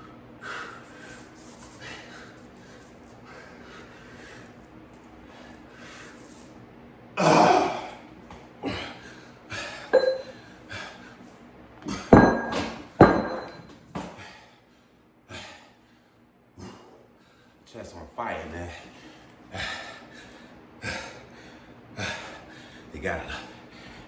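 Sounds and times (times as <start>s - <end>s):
man breathing hard: 0.0s - 4.6s, 5.2s - 6.5s, 7.2s - 11.3s, 14.0s - 17.6s, 18.7s - 24.0s
metallic clink: 10.0s - 10.4s.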